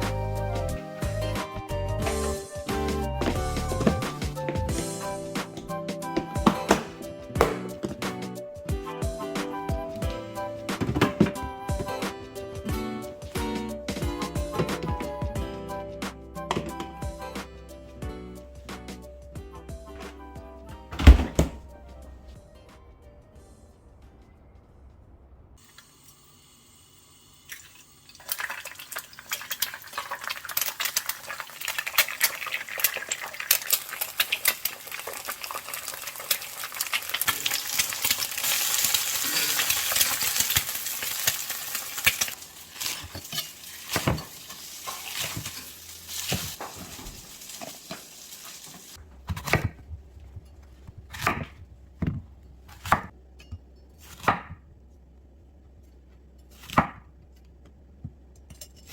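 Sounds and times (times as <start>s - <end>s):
food sizzling: 25.6s - 49.0s
utensil stirring and scraping pan: 42.2s - 49.0s.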